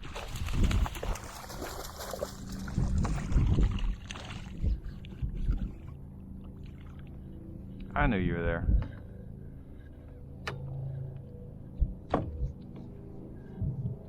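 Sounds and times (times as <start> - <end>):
water splashing: 0.0 - 7.1
low knocks against hull: 11.8 - 12.6.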